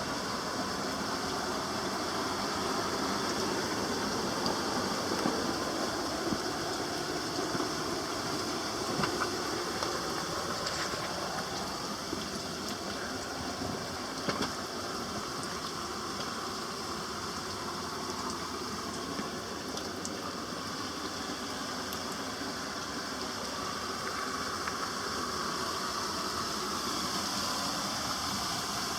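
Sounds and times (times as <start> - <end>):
waterfall rushing: 0.0 - 19.6
faint water splashing clicks: 8.8 - 13.3.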